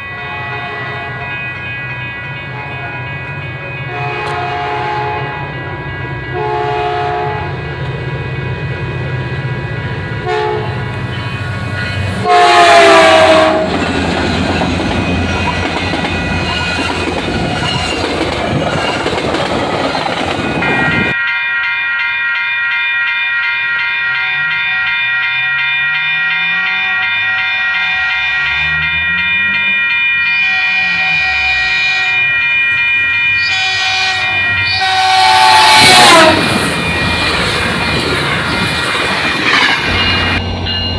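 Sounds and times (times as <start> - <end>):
train horn blasts: 0.0 - 1.5, 3.8 - 5.6, 6.3 - 7.7, 10.2 - 10.9, 11.9 - 14.0, 30.4 - 32.4, 33.4 - 37.4
train rumbling past: 0.0 - 21.2, 26.4 - 40.9
steady high tone: 0.0 - 40.9.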